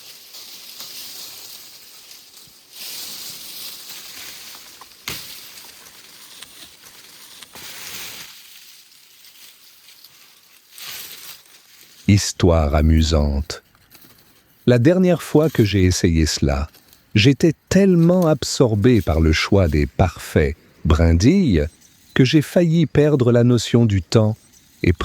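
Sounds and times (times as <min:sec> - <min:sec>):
twigs and leaves rustling: 0:00.0 - 0:25.0
stick cracking: 0:03.9 - 0:08.4.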